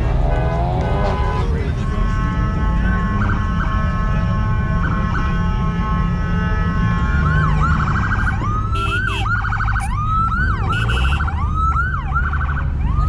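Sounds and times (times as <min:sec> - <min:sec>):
car engines rumbling: 0:00.0 - 0:13.0
electronic vehicle siren: 0:02.8 - 0:13.0.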